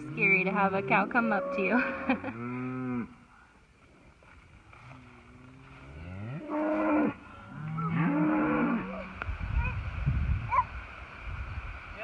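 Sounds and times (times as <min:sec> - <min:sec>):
cow mooing: 0:00.0 - 0:03.2, 0:05.0 - 0:09.1.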